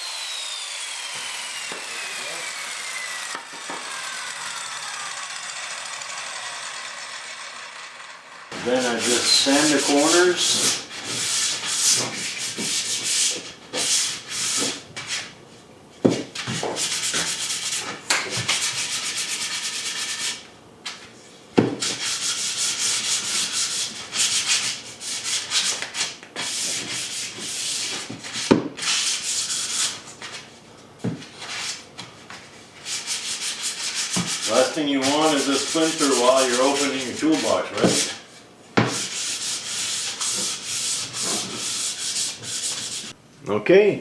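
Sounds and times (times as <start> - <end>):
sandpaper rubbing on plywood: 8.5 - 15.3, 16.4 - 20.4, 21.8 - 30.4, 31.4 - 31.8, 32.8 - 43.2.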